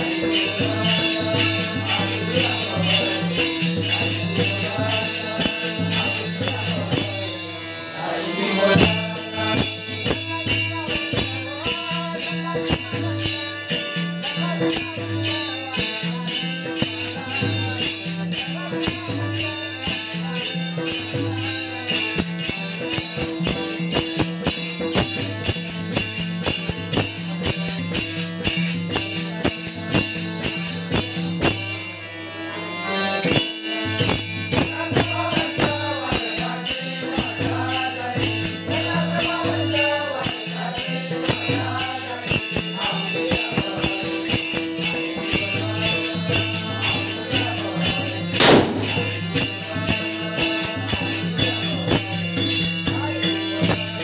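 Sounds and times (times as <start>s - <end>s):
jingling metal percussion: 0.0s - 7.7s, 8.7s - 32.0s, 33.0s - 54.0s
person singing: 0.0s - 20.4s
held drone notes: 44.8s - 52.4s
sharp knock: 48.4s - 49.6s.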